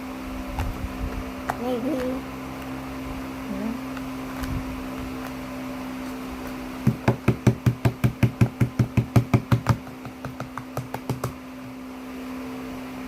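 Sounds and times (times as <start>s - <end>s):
steady low hum: 0.0s - 13.0s
knocks on a hard surface: 6.8s - 11.7s.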